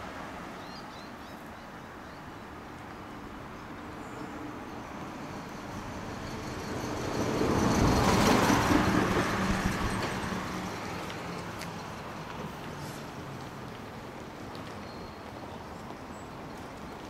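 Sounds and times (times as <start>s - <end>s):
road vehicle driving past: 3.2s - 14.7s.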